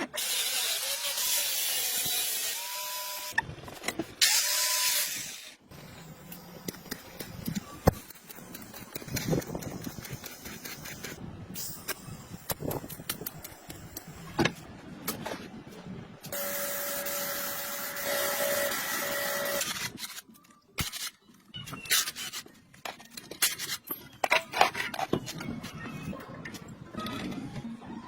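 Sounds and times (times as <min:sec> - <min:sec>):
clicks and knocks of parts: 0:19.6 - 0:25.8.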